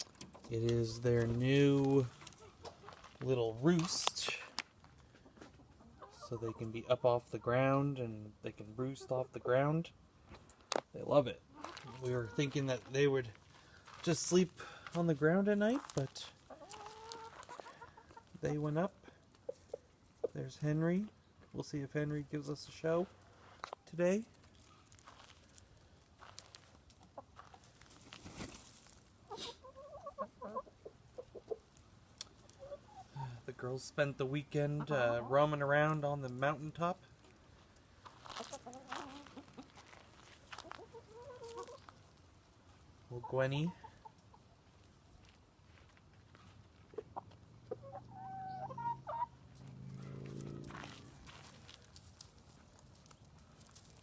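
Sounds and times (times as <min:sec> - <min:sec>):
rustle: 0:00.0 - 0:06.2, 0:11.5 - 0:21.5, 0:22.4 - 0:48.2, 0:49.0 - 0:54.0
chickens clucking: 0:00.0 - 0:09.7, 0:11.5 - 0:13.0, 0:15.0 - 0:20.4, 0:29.2 - 0:33.5, 0:34.2 - 0:36.4, 0:38.2 - 0:39.8, 0:40.5 - 0:42.2, 0:43.1 - 0:44.6, 0:46.7 - 0:51.2.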